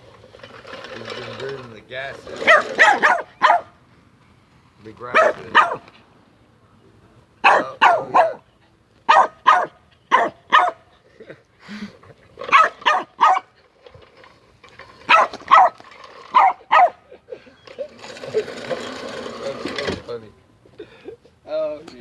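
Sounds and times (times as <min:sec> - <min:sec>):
mechanical rattling: 0:00.0 - 0:03.6, 0:12.4 - 0:16.8, 0:17.6 - 0:20.2
small dog barking: 0:02.4 - 0:03.8, 0:05.1 - 0:05.9, 0:07.4 - 0:08.4, 0:09.1 - 0:10.8, 0:12.5 - 0:13.5, 0:15.1 - 0:17.0.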